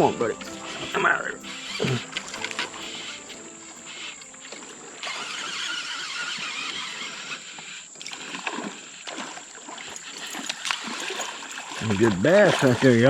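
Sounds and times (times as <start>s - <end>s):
water splashing around a kayak: 3.7s - 13.0s.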